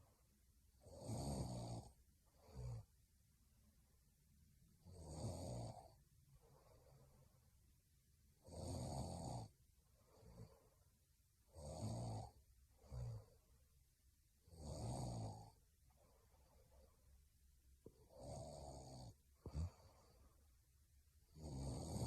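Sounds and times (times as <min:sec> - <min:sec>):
woman snoring: 0:00.8 - 0:02.9, 0:04.8 - 0:07.1, 0:08.4 - 0:09.5, 0:11.5 - 0:13.4, 0:14.4 - 0:15.6, 0:17.9 - 0:20.4, 0:21.3 - 0:22.0
soft breaths: 0:05.7 - 0:08.0, 0:09.5 - 0:11.5, 0:12.2 - 0:14.2, 0:15.2 - 0:22.0.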